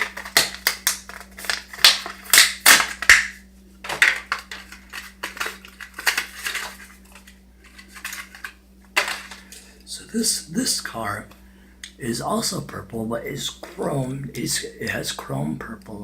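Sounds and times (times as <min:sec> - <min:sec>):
packaging crackling and ripping: 0:00.0 - 0:09.5.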